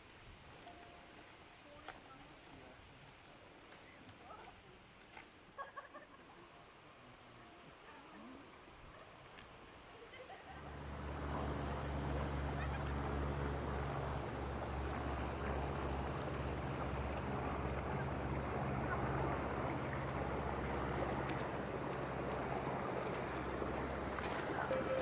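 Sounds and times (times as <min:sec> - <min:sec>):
motor boat engine passing: 0:10.3 - 0:25.0
water rushing noise: 0:10.6 - 0:25.0.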